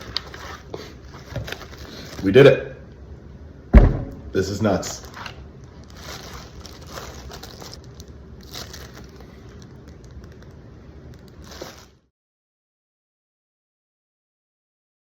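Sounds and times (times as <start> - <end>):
rustling and clicking handling noise: 0.0 - 2.3, 4.9 - 12.0
low steady rumble: 1.4 - 11.6.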